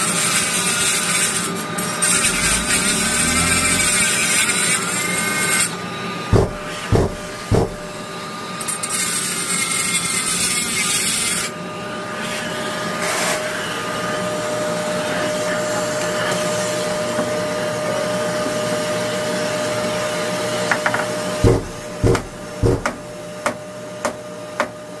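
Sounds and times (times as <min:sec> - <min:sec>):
power tool bursts: 0:02.0 - 0:04.2
dust extractor motor whine: 0:02.0 - 0:04.6, 0:06.4 - 0:08.0, 0:21.4 - 0:23.4
sharp knocks: 0:06.3 - 0:08.0, 0:21.4 - 0:23.6.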